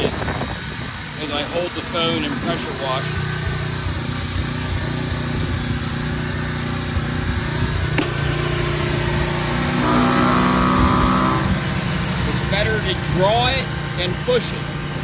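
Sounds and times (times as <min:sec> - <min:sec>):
high steady whine: 0:00.0 - 0:15.0
pressure washer engine running: 0:00.0 - 0:15.0
water spraying onto concrete: 0:00.0 - 0:15.0.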